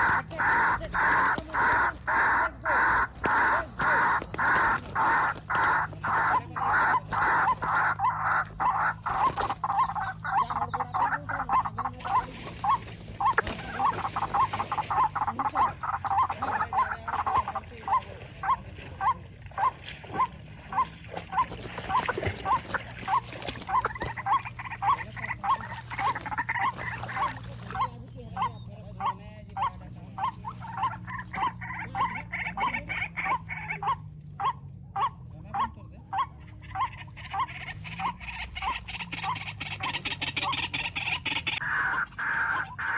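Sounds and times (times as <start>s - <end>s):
waterhen croaking calls: 0.0s - 42.9s.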